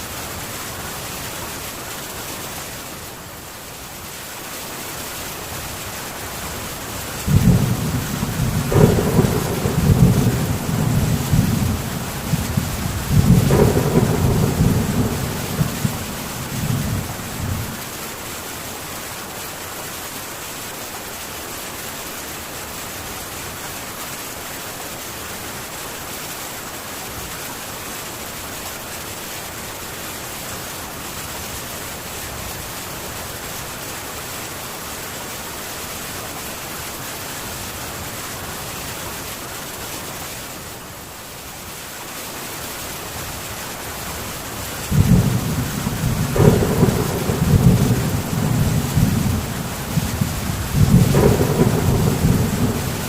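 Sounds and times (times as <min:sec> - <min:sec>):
heavy rain on a tin roof: 0:00.0 - 0:53.0
thunder rumbling: 0:07.3 - 0:17.9, 0:44.9 - 0:53.0.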